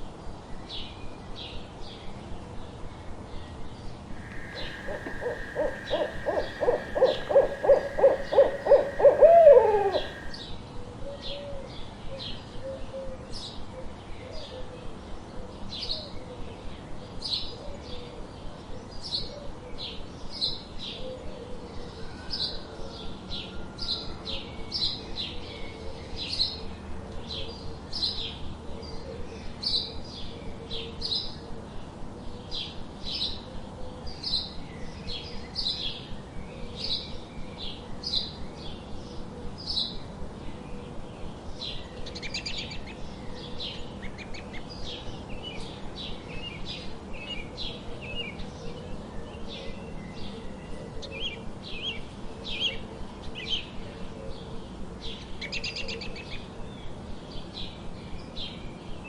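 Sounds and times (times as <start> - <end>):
small songbirds chirping: 4.2 - 10.4.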